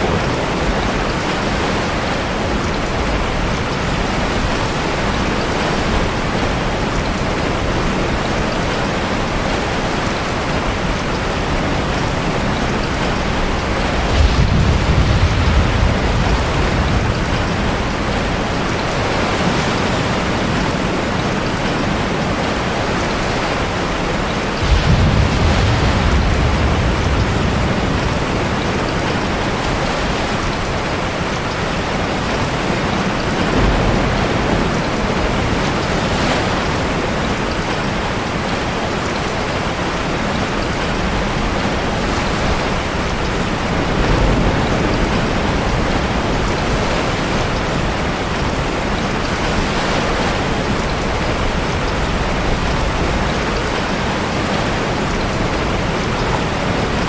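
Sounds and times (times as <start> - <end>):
heavy rain: 0.0 - 57.0
ocean surf: 0.0 - 57.0
deep wave surge: 11.5 - 19.0, 24.6 - 29.4.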